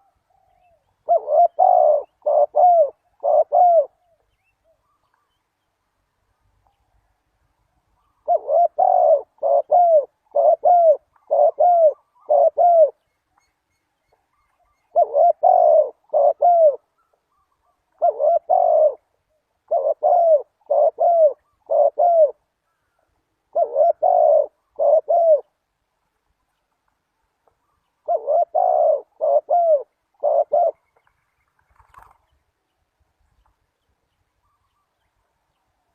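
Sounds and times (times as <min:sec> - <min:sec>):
dove cooing: 0:00.0 - 0:05.1, 0:08.0 - 0:13.0, 0:14.3 - 0:25.6, 0:27.6 - 0:31.1.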